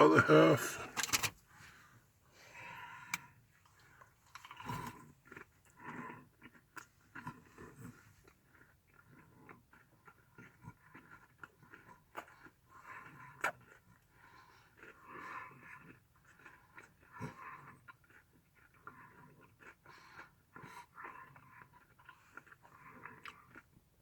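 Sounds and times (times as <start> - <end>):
person crunching and chewing: 4.2 - 7.5.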